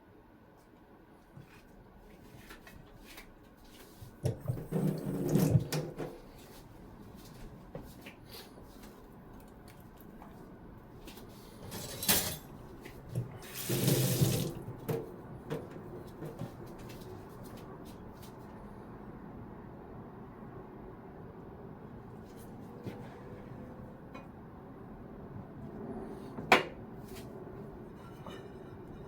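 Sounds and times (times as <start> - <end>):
water splashing into sink: 4.3 - 6.0, 13.3 - 14.8.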